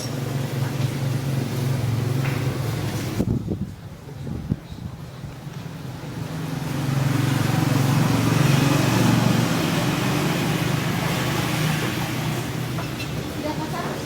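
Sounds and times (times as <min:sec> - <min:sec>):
scooter engine running: 0:06.0 - 0:14.0.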